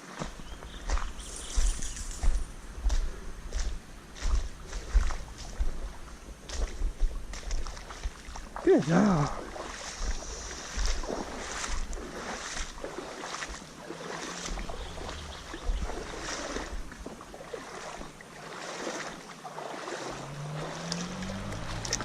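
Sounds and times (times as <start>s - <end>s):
water sloshing around wading person: 0.0s - 22.0s.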